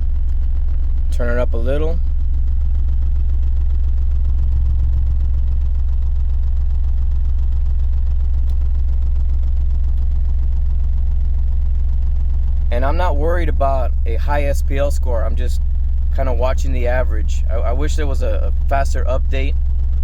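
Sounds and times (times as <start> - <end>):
deep bass test tone: 0.0 - 20.0.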